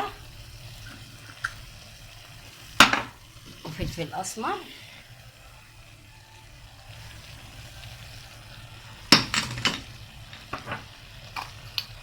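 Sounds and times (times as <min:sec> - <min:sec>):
food sizzling in oil: 0:00.0 - 0:12.0.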